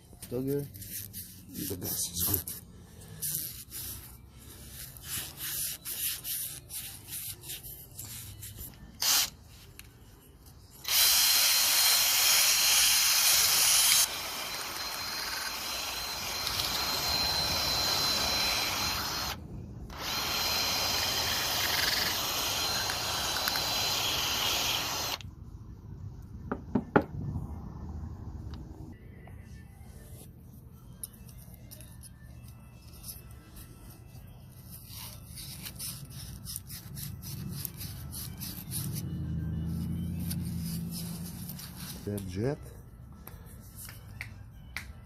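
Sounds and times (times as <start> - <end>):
faint high whistle: 14.5 - 19.4.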